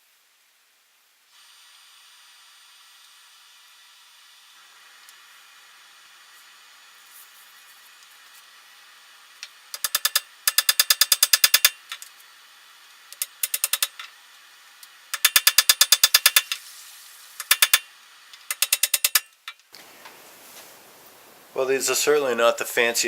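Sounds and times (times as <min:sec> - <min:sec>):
ratchet mechanism clicking: 0:09.7 - 0:12.1, 0:13.1 - 0:14.1, 0:14.8 - 0:16.6, 0:17.4 - 0:19.6.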